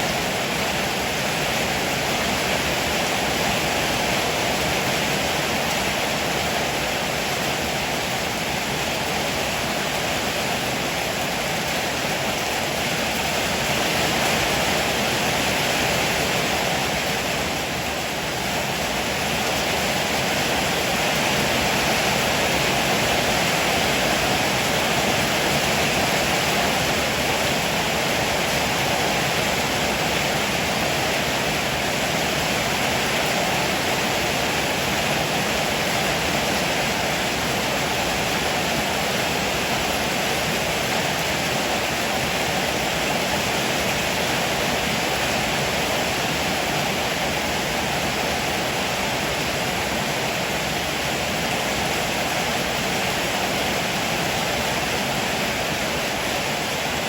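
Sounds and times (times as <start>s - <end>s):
heavy rain: 0.0s - 57.0s.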